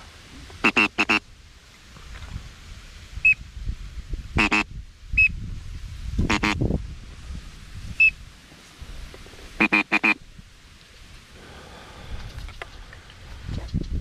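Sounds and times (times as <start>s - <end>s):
duck call quacks: 0.6s - 1.2s, 4.4s - 4.7s, 6.3s - 6.6s, 9.6s - 10.2s.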